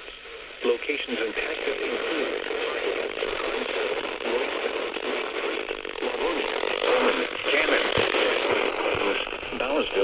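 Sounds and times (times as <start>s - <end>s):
radio static hiss: 0.0s - 10.0s.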